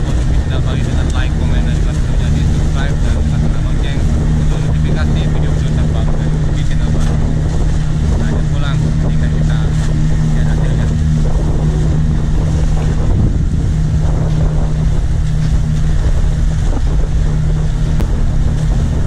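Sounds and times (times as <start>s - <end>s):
boat engine running: 0.0s - 19.0s
wind on microphone: 0.0s - 19.0s.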